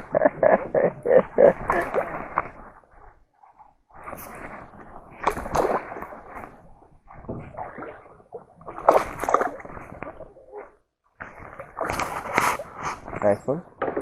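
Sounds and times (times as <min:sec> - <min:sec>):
fish thrashing and splashing water: 0:01.4 - 0:02.8, 0:04.0 - 0:13.2.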